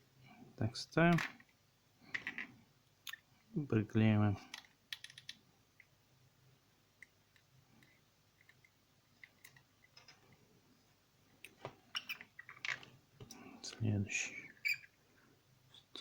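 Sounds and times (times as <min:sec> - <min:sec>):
small plastic parts clicking: 0:04.5 - 0:05.9, 0:07.0 - 0:10.3.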